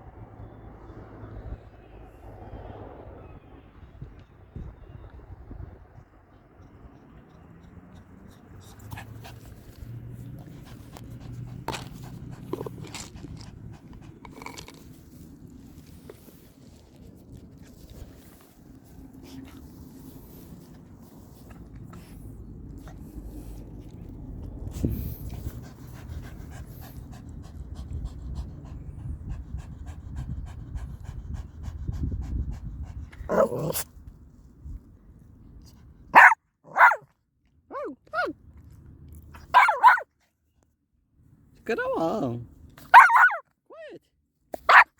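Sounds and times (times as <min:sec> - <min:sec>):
small dog panting: 0:06.6 - 0:33.9
dog chewing on a toy: 0:08.6 - 0:18.2.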